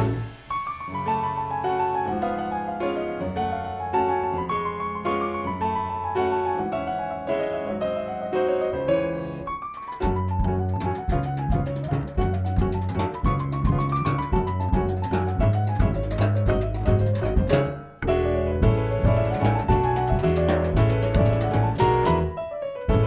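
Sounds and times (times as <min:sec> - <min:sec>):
drums and bass: 0:00.0 - 0:00.8, 0:10.0 - 0:17.8, 0:18.6 - 0:23.0
solo piano notes: 0:00.0 - 0:23.0.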